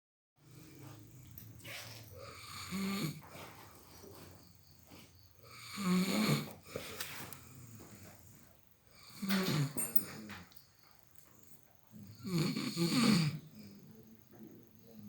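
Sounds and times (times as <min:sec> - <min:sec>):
person snoring: 0:02.2 - 0:03.2, 0:05.5 - 0:08.1, 0:08.9 - 0:09.8, 0:12.0 - 0:14.2
soft breathing: 0:06.5 - 0:09.2.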